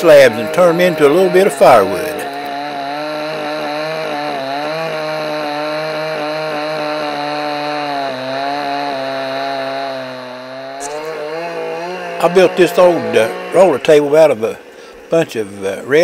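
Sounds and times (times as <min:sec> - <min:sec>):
chainsaw cutting wood: 0:00.0 - 0:16.0.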